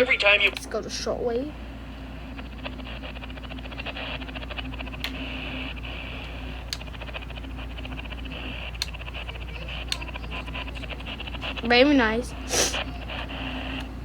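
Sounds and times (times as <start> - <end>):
radio static with crackle: 0.0 - 14.0
sharp clicks: 4.9 - 5.2, 6.2 - 7.1, 7.8 - 10.7.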